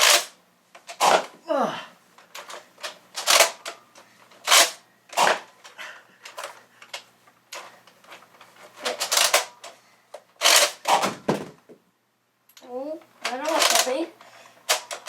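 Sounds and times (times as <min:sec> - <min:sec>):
toy blaster clacks and pops: 0:00.0 - 0:00.4, 0:03.2 - 0:03.7, 0:08.8 - 0:09.6, 0:13.4 - 0:13.9, 0:14.7 - 0:15.0.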